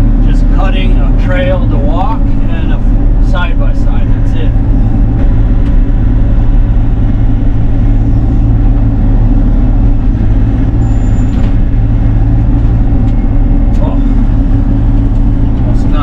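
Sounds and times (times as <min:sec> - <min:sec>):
excavator diesel engine running: 0:00.0 - 0:16.0.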